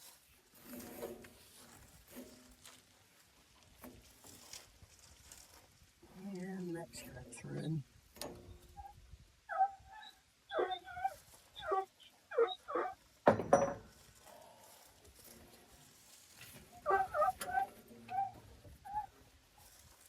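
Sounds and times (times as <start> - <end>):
short pitched animal calls: 8.8 - 13.0, 16.8 - 19.2.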